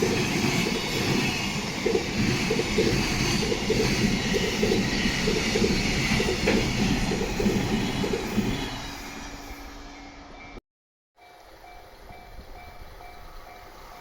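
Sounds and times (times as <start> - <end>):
train wheels clattering: 0.0 - 8.8.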